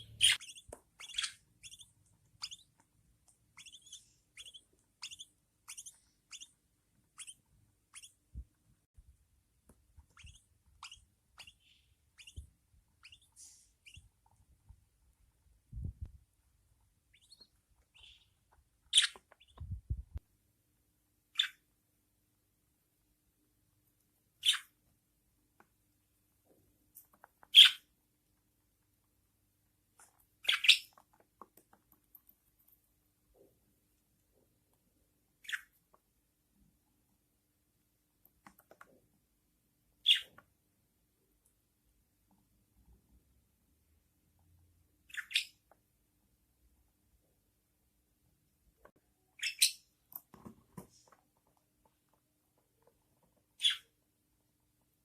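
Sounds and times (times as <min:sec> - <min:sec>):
budgerigars chirping: 0:00.0 - 0:02.8, 0:03.5 - 0:08.2, 0:10.2 - 0:12.4, 0:13.0 - 0:14.0, 0:17.1 - 0:19.6, 0:21.4 - 0:21.6, 0:24.4 - 0:24.7, 0:27.5 - 0:27.9, 0:30.4 - 0:31.0, 0:35.4 - 0:35.7, 0:40.0 - 0:40.4, 0:45.1 - 0:45.7, 0:49.4 - 0:49.9, 0:53.6 - 0:53.9
soft low thumps of movement: 0:15.6 - 0:16.3, 0:19.5 - 0:20.2.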